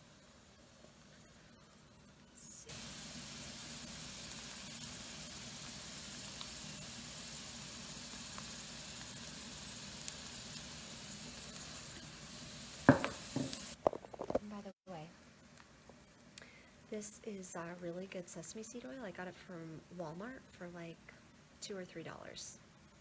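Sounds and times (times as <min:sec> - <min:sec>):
tofu sizzling in oil: 0:02.6 - 0:13.8.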